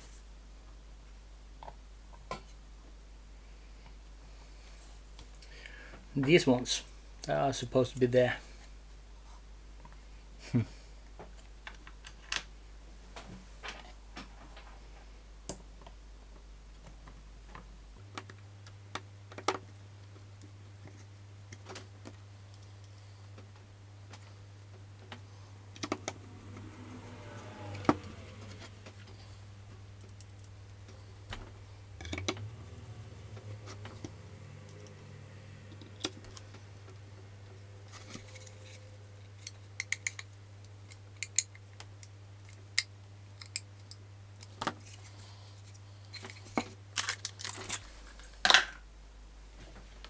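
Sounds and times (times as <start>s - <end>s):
steady low hum: 12.6s - 50.0s
small tools clicking and tapping: 39.4s - 44.7s.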